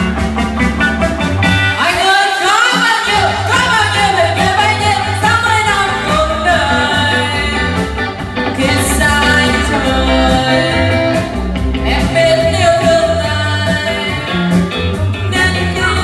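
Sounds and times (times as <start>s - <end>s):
band song with singer: 0.0s - 16.0s.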